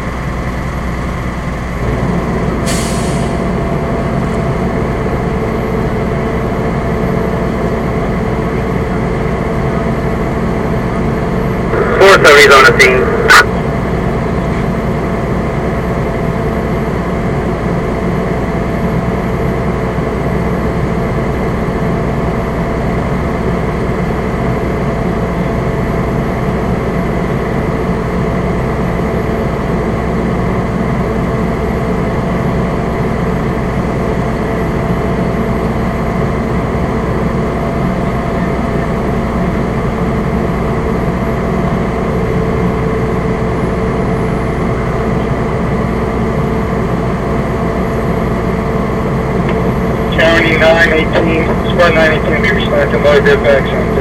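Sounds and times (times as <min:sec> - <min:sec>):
diesel engine humming: 0:00.0 - 0:54.0.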